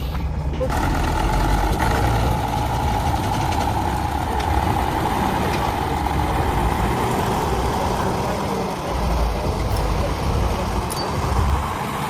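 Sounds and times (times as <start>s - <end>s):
heavy truck engine running: 0.0s - 12.0s.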